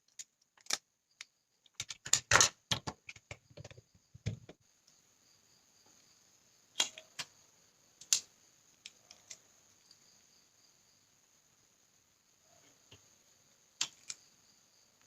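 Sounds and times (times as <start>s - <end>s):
plastic parts clicking: 0.0s - 4.6s, 6.8s - 7.3s, 13.8s - 14.2s
faint high hiss: 4.6s - 15.0s.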